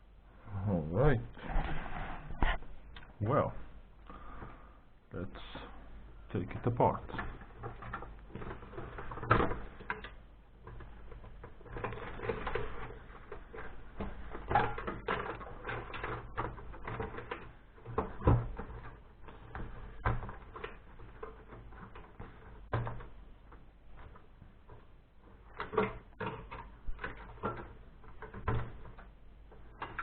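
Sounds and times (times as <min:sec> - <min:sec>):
computer parts clicking and knocking: 0:06.3 - 0:30.0.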